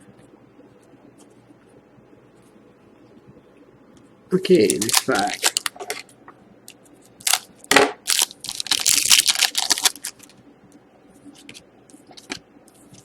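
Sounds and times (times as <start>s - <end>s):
wrapper tearing and crinkling: 4.6s - 5.8s, 7.2s - 10.3s
cards clicking and rustling: 4.6s - 6.0s, 8.1s - 10.4s.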